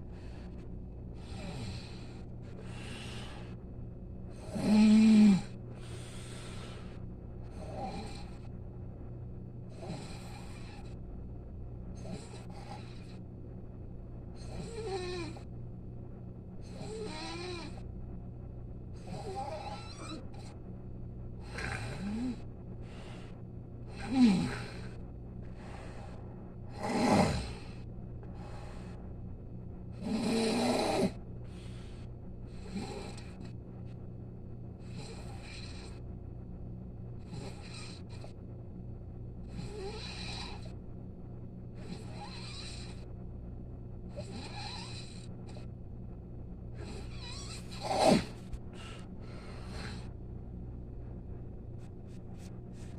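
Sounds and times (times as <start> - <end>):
slow breathy breathing: 0.0 - 8.6, 21.3 - 30.1, 30.9 - 34.0, 46.7 - 52.9
loud buzzing snore: 1.2 - 3.6, 4.3 - 8.5, 9.7 - 11.0, 12.0 - 13.2, 14.4 - 15.5, 16.6 - 17.8, 19.0 - 20.6, 21.4 - 23.2, 23.8 - 25.0, 26.7 - 27.8, 29.9 - 31.8, 32.5 - 33.5, 34.8 - 36.0, 37.2 - 38.4, 39.4 - 40.8, 41.8 - 43.1, 44.1 - 45.7, 46.7 - 50.2.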